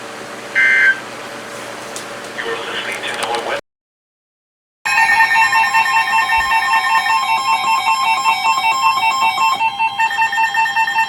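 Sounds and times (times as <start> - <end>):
pulsing high electronic alert tone: 4.9 - 11.0.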